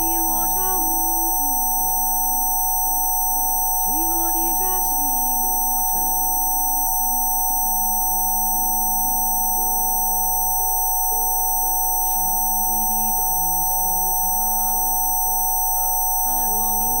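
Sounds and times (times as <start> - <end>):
electronic sine tones: 0.0 - 17.0
soft ambient music: 4.0 - 17.0.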